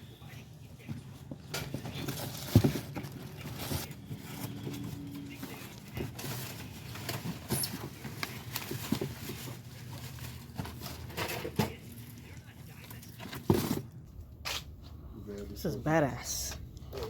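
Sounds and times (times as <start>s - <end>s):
objects rummaged and handled: 0.8s - 15.6s.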